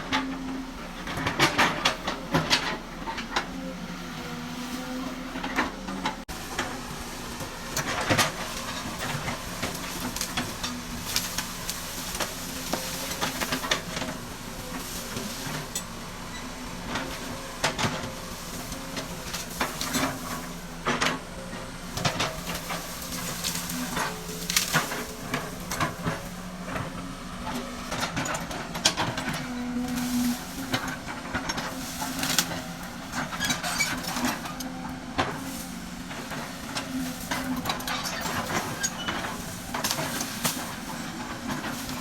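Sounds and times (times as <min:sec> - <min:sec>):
excavator engine hum: 0:00.0 - 0:42.0.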